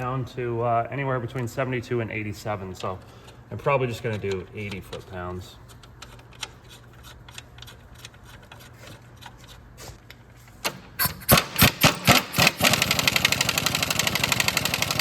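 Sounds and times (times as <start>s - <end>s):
impact wrench hammering: 10.6s - 15.0s.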